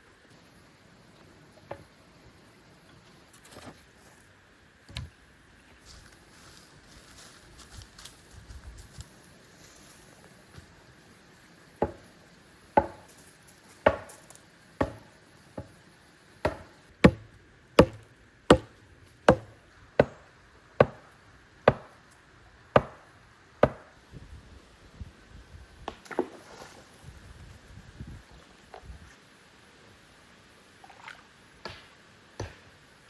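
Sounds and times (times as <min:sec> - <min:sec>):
wood chopping blows: 0:13.9 - 0:15.1.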